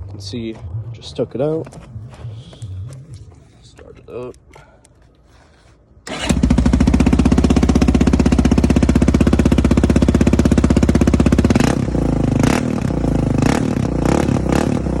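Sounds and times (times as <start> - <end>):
loud atv engine running: 6.1 - 15.0.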